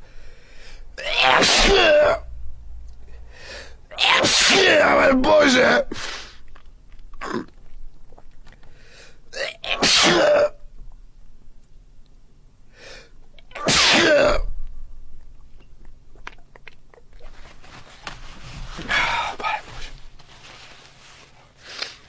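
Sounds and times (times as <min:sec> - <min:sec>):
person sneezing loudly: 0:01.0 - 0:02.3, 0:03.9 - 0:06.4, 0:09.4 - 0:10.6, 0:13.5 - 0:14.5.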